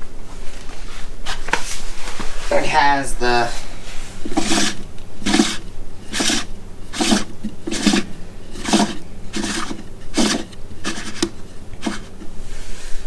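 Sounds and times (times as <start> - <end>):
rhythmic rasping rubbing strokes: 3.6 - 13.0.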